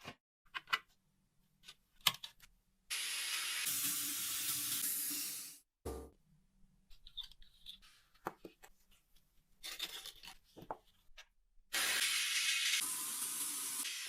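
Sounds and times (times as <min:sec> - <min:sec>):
small parts clicking and rubbing: 0:09.6 - 0:11.2.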